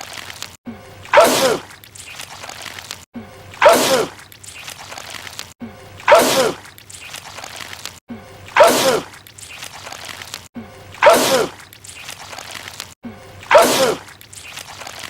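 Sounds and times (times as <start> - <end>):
man sneezing: 6.1 - 6.6, 8.6 - 9.1, 13.5 - 14.0.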